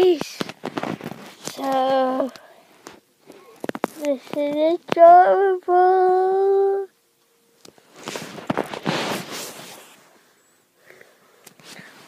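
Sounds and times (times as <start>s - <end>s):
soft rustling: 0.0s - 5.1s, 7.6s - 10.5s
girl singing a long note: 4.0s - 6.9s.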